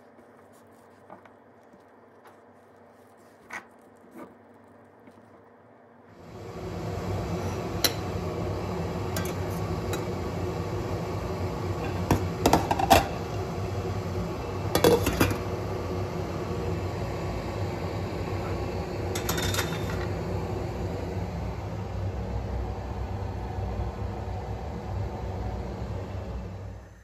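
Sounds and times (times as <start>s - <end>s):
kitchen appliance humming: 0.0s - 27.0s
dishes and utensils clinking: 19.2s - 20.1s.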